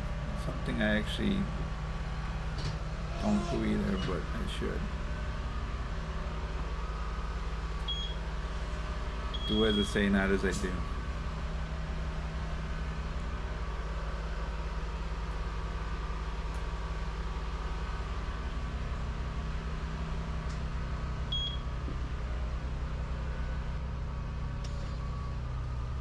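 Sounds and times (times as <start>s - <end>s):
machine hum: 0.0s - 18.2s.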